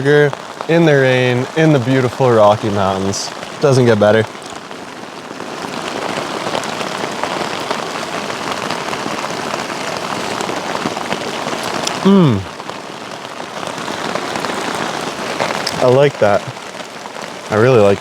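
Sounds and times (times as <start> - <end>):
heavy rain on a tarp: 0.0 - 18.0
person humming: 11.9 - 12.5.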